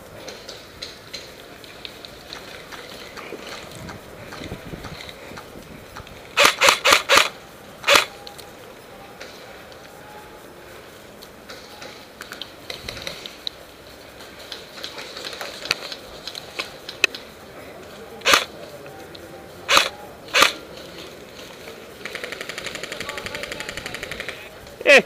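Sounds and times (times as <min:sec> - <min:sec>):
short loud noise bursts: 0:06.3 - 0:08.1, 0:18.2 - 0:18.5
airsoft gun full-auto burst: 0:06.4 - 0:08.1, 0:18.2 - 0:18.5, 0:19.7 - 0:20.6, 0:22.0 - 0:24.5.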